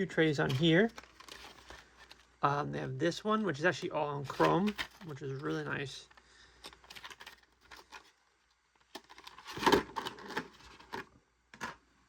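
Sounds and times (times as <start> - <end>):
plastic trays crackling: 3.9 - 8.2.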